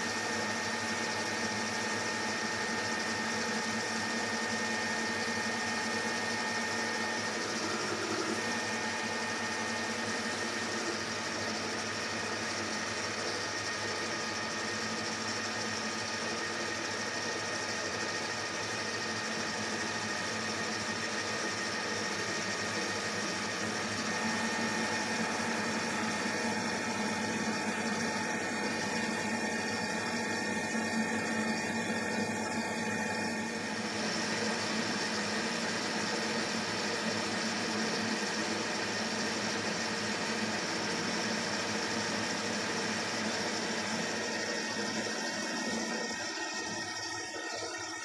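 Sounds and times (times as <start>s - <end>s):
metal lathe humming: 0.9s - 12.0s, 24.0s - 48.0s.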